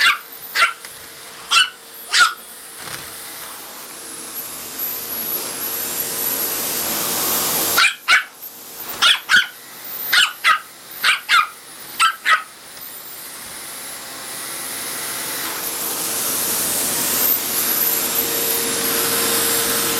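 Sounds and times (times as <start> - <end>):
dog barking sharply: 0.0 - 0.8, 1.5 - 2.4, 7.8 - 8.4, 9.0 - 12.5
vacuum cleaner whooshing hum: 0.0 - 19.9.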